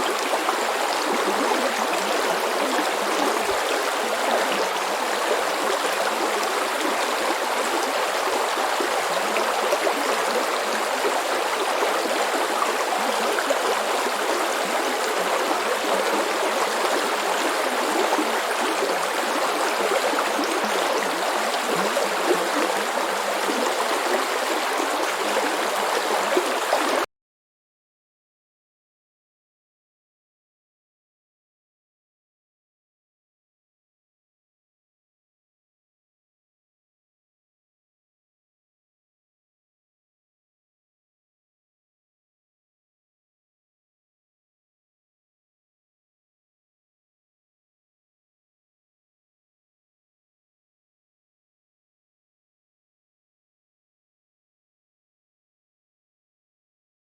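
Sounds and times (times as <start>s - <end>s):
stream flowing over stones: 0.0s - 27.1s.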